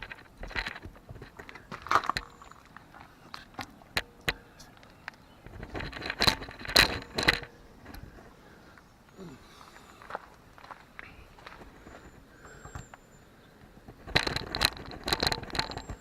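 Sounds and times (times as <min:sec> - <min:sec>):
metallic clinks and scrapes: 0:00.0 - 0:08.0, 0:11.6 - 0:16.0.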